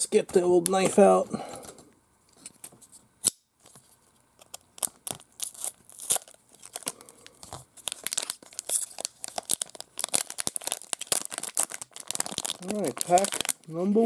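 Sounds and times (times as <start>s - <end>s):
plastic crinkling: 3.6s - 14.0s
plastic wrapping being torn: 4.4s - 14.0s.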